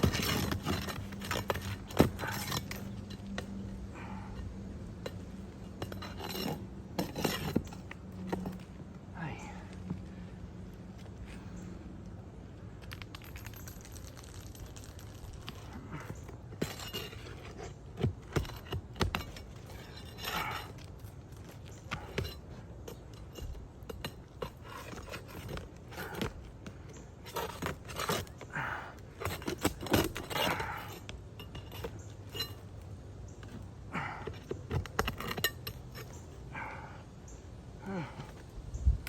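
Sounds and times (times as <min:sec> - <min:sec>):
metal tools scraping shingles: 0:00.0 - 0:08.8, 0:12.9 - 0:38.6.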